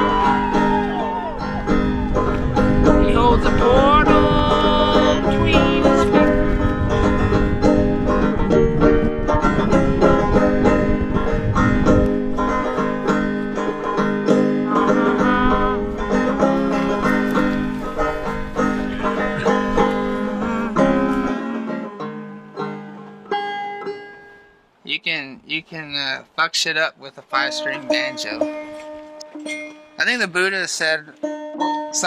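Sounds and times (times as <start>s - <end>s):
banjo picking: 0.0s - 24.8s, 27.3s - 32.0s.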